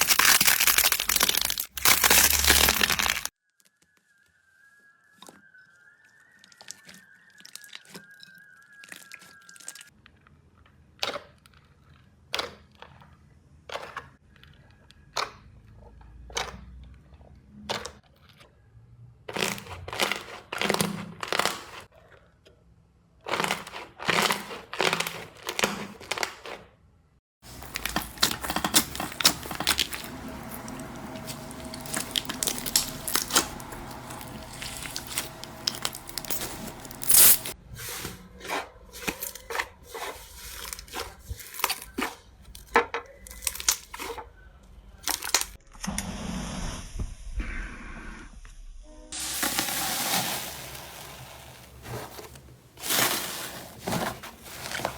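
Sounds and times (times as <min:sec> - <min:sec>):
slime crackling and popping: 0:00.0 - 0:03.4, 0:27.4 - 0:37.6.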